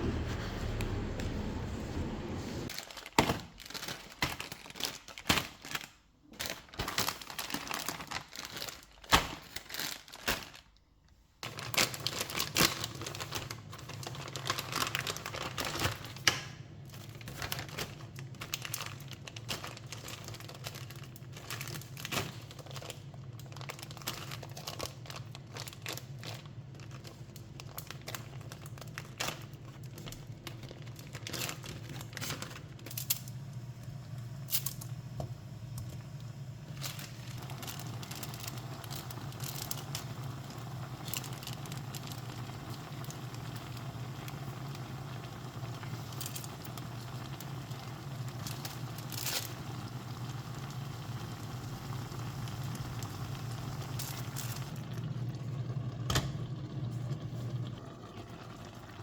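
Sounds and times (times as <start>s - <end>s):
low hum: 0.0s - 2.7s
packaging crinkling and tearing: 2.7s - 34.9s, 35.8s - 55.0s.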